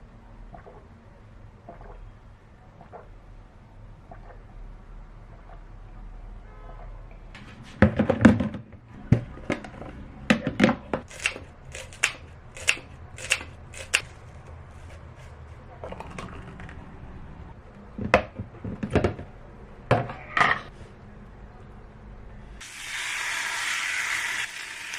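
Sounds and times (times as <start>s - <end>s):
objects knocking and clattering: 7.4s - 11.1s, 17.9s - 20.7s.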